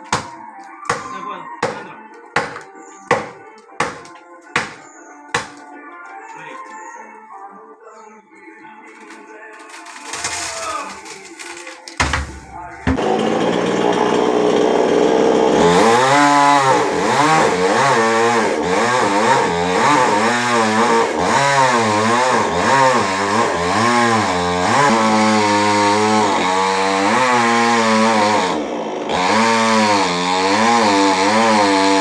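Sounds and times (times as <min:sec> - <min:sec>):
chainsaw cutting through trunk: 0:12.5 - 0:32.0.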